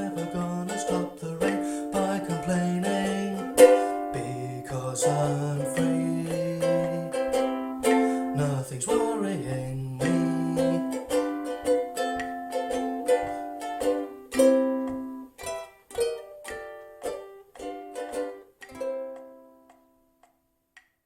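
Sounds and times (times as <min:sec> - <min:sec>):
ukulele strumming chords: 0:00.0 - 0:20.6.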